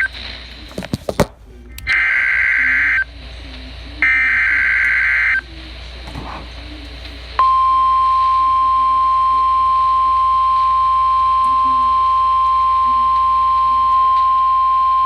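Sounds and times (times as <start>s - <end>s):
steady warning alarm tone: 4.0s - 5.5s.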